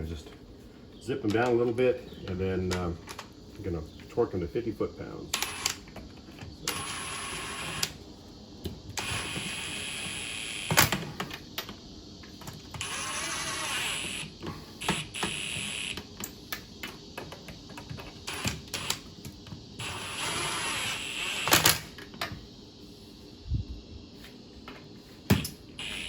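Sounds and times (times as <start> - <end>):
steady buzzing: 19.8 - 21.9, 25.8 - 26.0.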